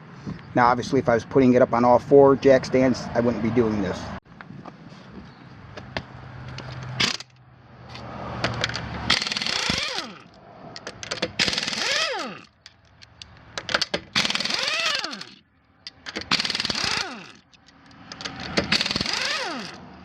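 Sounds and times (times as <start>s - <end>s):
impact wrench rattling: 6.6s - 7.4s, 8.4s - 19.9s.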